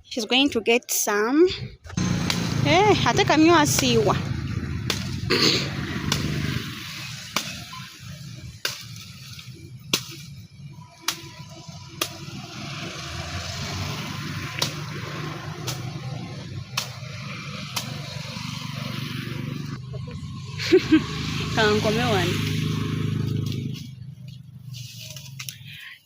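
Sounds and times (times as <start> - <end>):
blade chopping sugar cane: 2.0 - 4.0, 4.6 - 13.3, 13.9 - 18.4.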